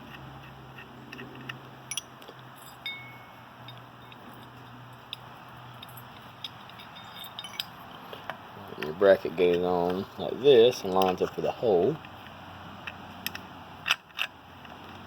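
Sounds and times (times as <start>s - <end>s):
metallic clinks of tools: 1.9s - 7.9s.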